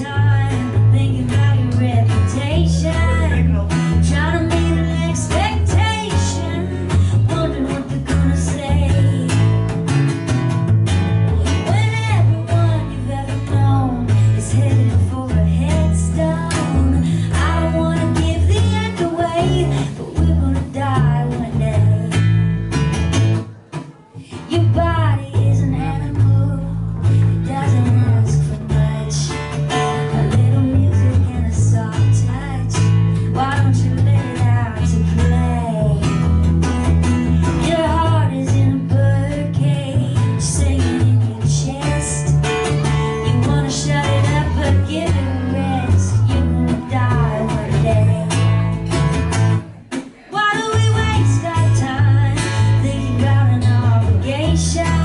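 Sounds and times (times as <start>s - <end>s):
person singing: 0.0s - 9.7s, 37.4s - 48.7s
strummed acoustic guitar: 0.0s - 55.0s.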